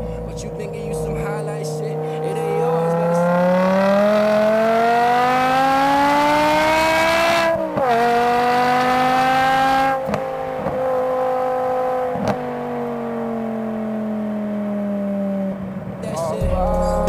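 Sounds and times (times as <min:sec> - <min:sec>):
car engine revving: 0:00.0 - 0:17.0.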